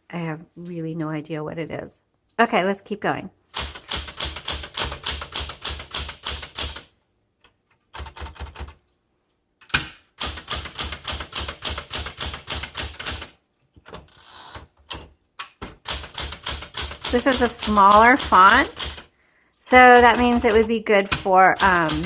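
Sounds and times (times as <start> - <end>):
manual typewriter keystrokes: 3.5 - 8.8, 9.6 - 22.0
typewriter mechanism noise: 3.6 - 6.9, 9.7 - 14.0, 14.6 - 22.0.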